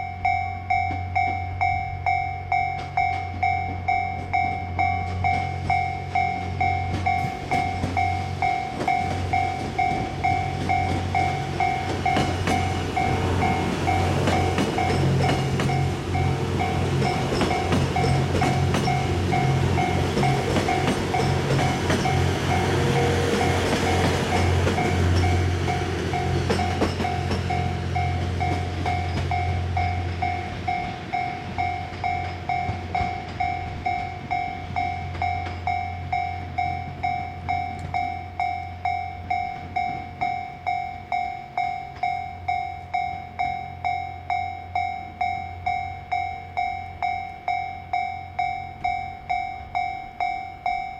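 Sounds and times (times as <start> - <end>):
level crossing warning bell: 0.0 - 50.9
train diesel engine drone: 0.0 - 50.9
rail clatter: 0.7 - 38.1.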